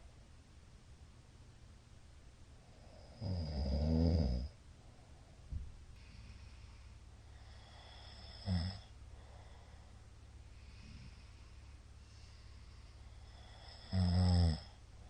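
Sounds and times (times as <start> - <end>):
low steady hum: 0.0 - 15.0
man snoring: 2.8 - 4.5, 7.4 - 8.9, 13.2 - 14.8.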